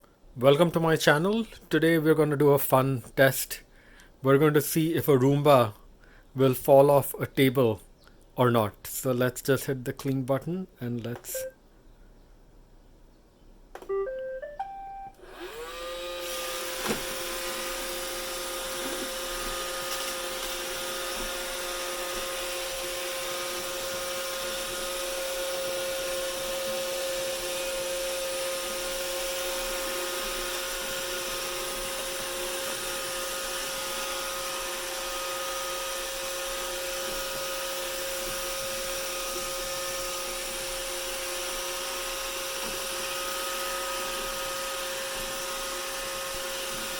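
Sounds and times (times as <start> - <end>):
robot vacuum beeping tune: 11.2 - 11.6, 13.8 - 15.8
robot vacuum motors whirring: 15.2 - 46.9.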